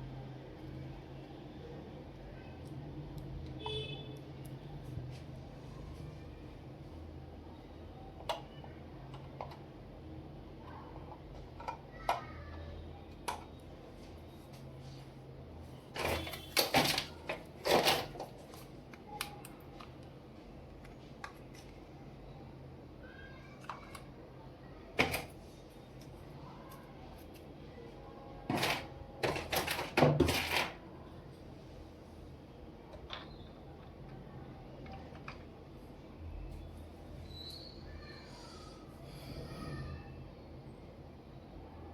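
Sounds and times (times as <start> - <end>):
toys clattering and rustling: 15.9 - 18.8, 28.4 - 30.8, 34.8 - 35.6.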